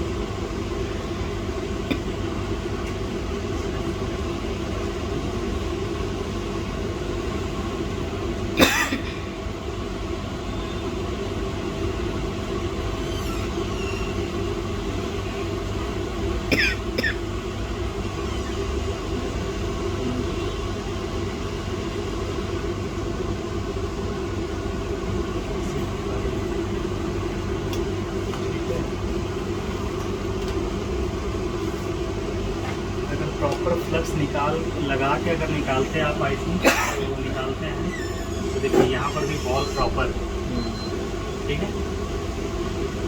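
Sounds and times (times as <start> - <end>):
mechanical hum: 0.0 - 43.0
short squeaks falling in pitch: 13.0 - 14.3, 37.9 - 40.0.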